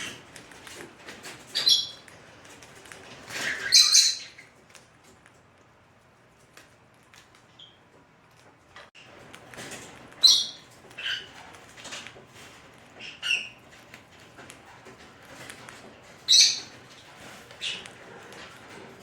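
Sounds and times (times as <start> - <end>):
parrot squawking: 3.3 - 4.5, 10.2 - 11.5, 13.0 - 13.6, 16.2 - 18.4.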